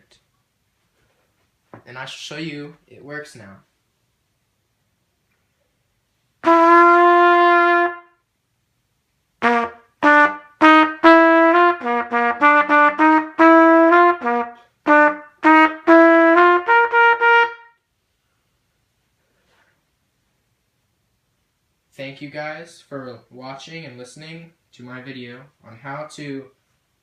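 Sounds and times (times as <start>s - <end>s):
trumpet playing notes: 6.4s - 8.2s, 9.4s - 17.8s.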